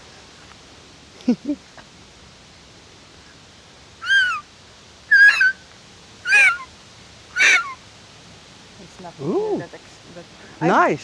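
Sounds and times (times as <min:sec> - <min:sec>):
grass blade whistling: 0:04.0 - 0:04.4, 0:05.1 - 0:05.6, 0:06.3 - 0:06.6, 0:07.4 - 0:07.8.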